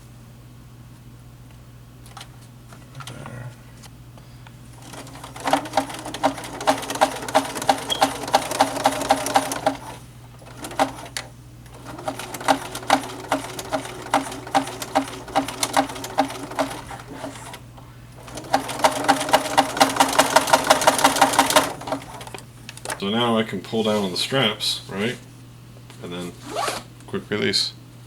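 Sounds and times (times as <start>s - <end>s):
sewing machine stitching: 4.8s - 23.0s.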